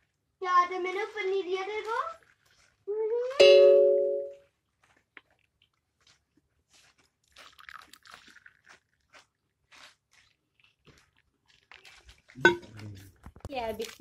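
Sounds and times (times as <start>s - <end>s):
person chewing crunchy snack: 2.1s - 2.9s, 4.8s - 14.0s.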